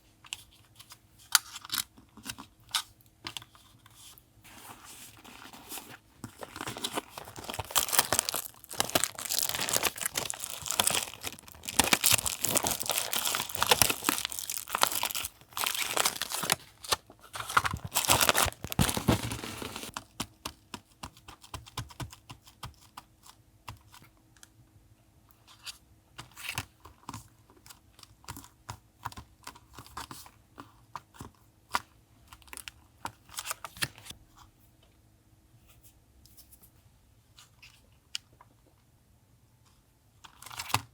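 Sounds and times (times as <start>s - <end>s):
paper tearing and crinkling: 5.1s - 19.9s
paper taps and rustles: 17.4s - 22.8s.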